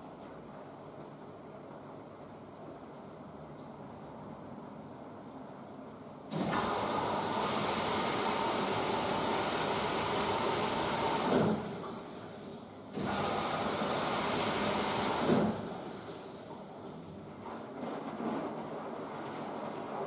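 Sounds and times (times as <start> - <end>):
washing machine hissing rush: 6.3 - 17.0.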